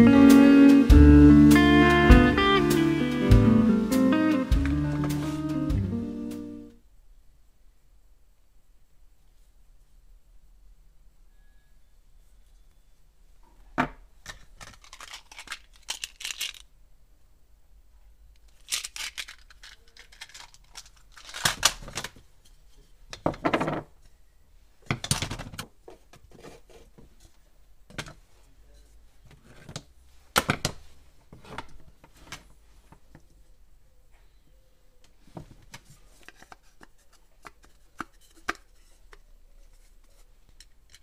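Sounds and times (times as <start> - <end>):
scrapes and rustles of parts: 14.2 - 16.7, 18.4 - 23.2, 25.1 - 33.1, 35.2 - 41.0.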